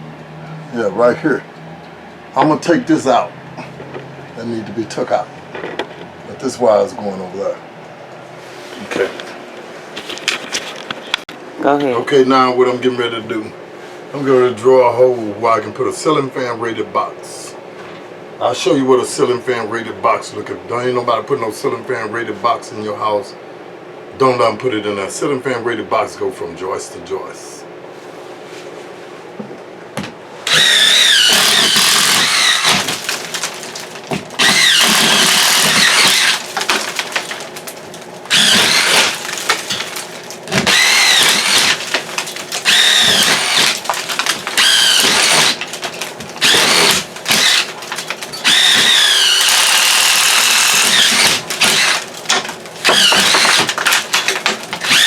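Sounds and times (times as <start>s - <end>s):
power tool cutting ceiling: 30.5s - 37.4s, 38.3s - 55.0s.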